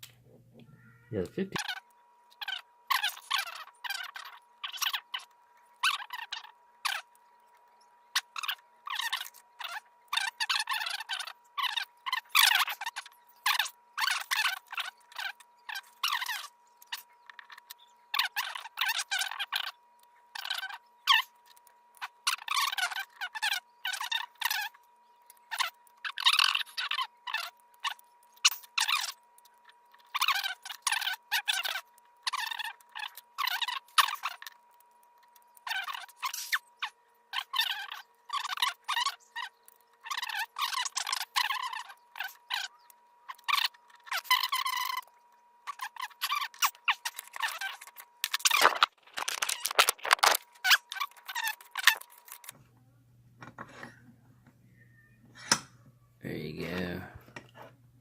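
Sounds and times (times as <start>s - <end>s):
faint steady whine: 0.0s - 58.0s
faint steady high tone: 0.6s - 2.1s, 54.4s - 57.2s.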